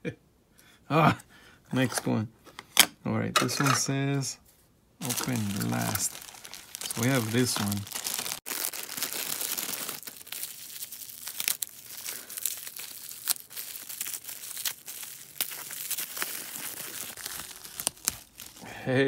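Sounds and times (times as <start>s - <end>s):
wrapping crinkling and tearing: 5.0s - 18.7s.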